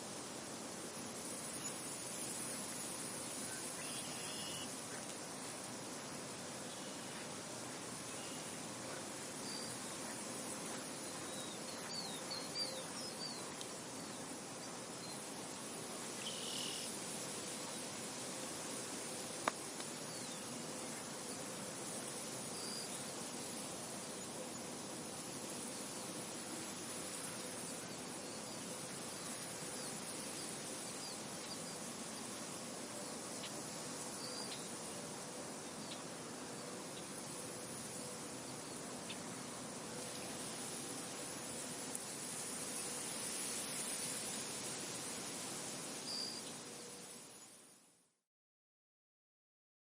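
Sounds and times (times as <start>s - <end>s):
steady wind: 0.0s - 48.0s
faint high chirps: 3.4s - 5.1s, 46.0s - 47.6s.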